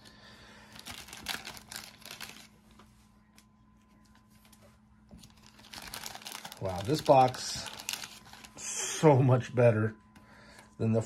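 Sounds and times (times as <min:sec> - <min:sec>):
cards rustling and clicking: 0:00.7 - 0:08.6.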